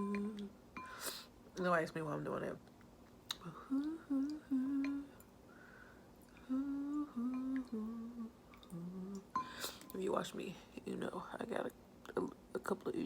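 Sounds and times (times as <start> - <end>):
woman humming: 0.0 - 0.6, 3.3 - 5.2, 6.3 - 9.8.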